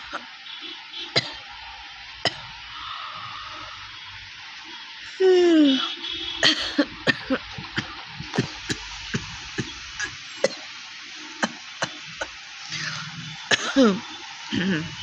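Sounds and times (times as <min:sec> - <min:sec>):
person coughing: 0:06.4 - 0:10.6, 0:11.4 - 0:14.0.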